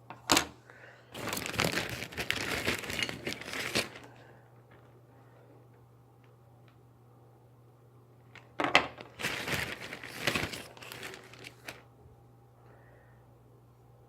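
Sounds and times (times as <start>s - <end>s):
plastic packaging crinkling: 1.1s - 4.2s, 8.9s - 11.9s.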